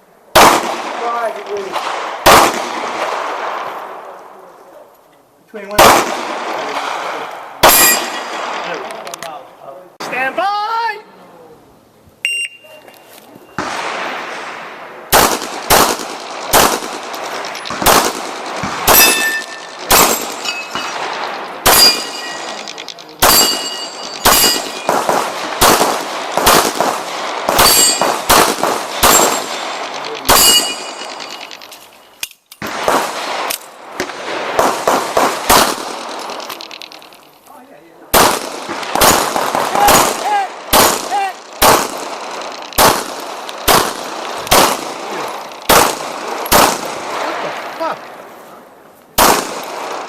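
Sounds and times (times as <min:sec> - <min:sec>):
pistol shots: 0:00.3 - 0:03.9, 0:05.7 - 0:09.1, 0:13.6 - 0:31.9, 0:32.6 - 0:37.2, 0:38.1 - 0:47.7, 0:49.2 - 0:50.0
ringing of struck steel targets: 0:07.6 - 0:08.4, 0:18.9 - 0:25.1, 0:27.5 - 0:32.4.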